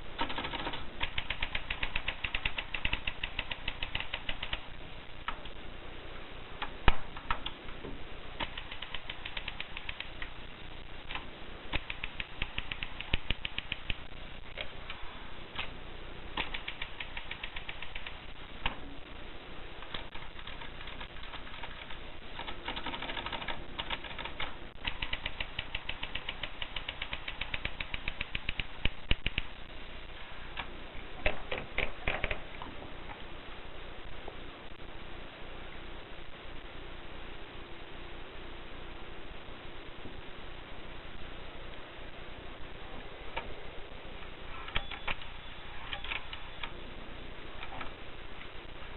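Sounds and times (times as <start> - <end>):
typewriter keys clacking: 0.2 - 4.6, 8.4 - 10.3, 16.4 - 18.2, 19.8 - 29.4.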